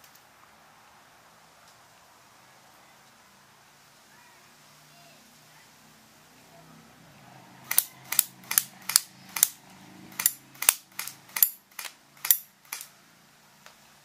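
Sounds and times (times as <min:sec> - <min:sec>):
sharp clicks: 0:07.7 - 0:12.9.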